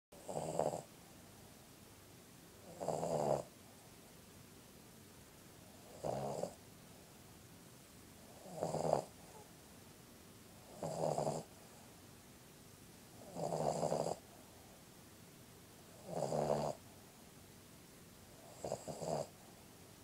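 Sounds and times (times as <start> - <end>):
dog snoring: 0.2 - 0.9, 2.6 - 3.5, 5.8 - 6.6, 8.3 - 9.5, 10.6 - 11.5, 13.2 - 14.2, 16.0 - 16.8, 18.4 - 19.4.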